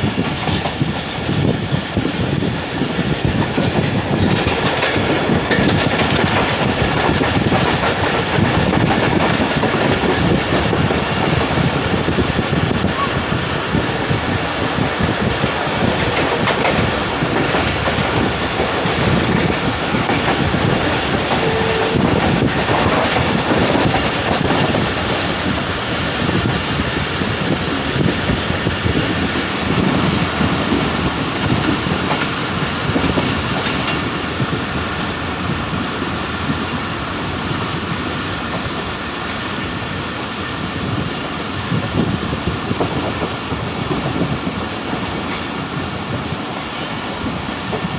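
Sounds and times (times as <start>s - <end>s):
wheels clattering over rail joints: 0.0s - 26.6s
train coaches rumbling: 0.0s - 47.9s.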